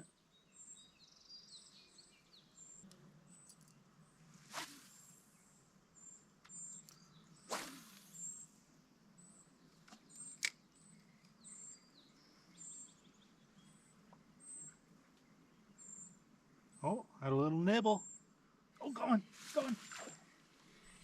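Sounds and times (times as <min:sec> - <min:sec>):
short whooshes: 0:04.4 - 0:05.2, 0:07.5 - 0:08.3
high thin bird chirps: 0:04.5 - 0:05.4, 0:06.0 - 0:08.5, 0:18.9 - 0:21.0.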